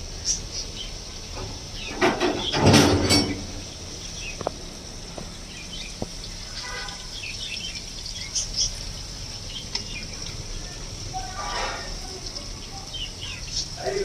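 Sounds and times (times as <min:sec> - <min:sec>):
onions sizzling in oil: 0:00.0 - 0:14.0.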